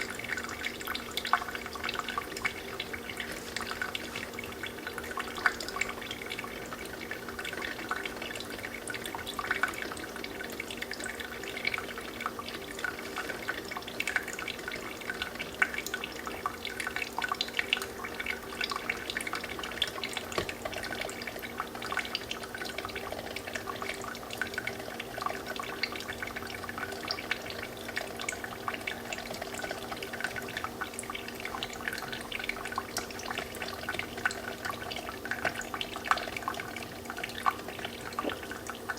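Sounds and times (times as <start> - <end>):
coffee dripping into pot: 0.0 - 38.9
low steady hum: 0.0 - 38.9.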